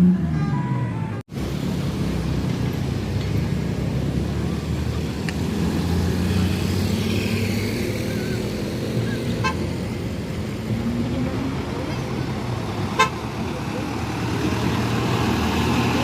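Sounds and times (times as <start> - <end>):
diesel bus engine rumbling: 0.0 - 16.0
road traffic noise: 0.0 - 16.0.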